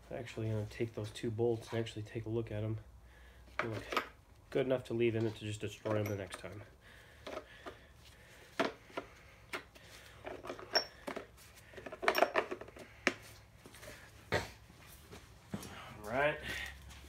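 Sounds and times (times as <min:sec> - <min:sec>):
metal tools clinking: 0:03.6 - 0:04.2, 0:05.2 - 0:06.6, 0:10.3 - 0:12.7.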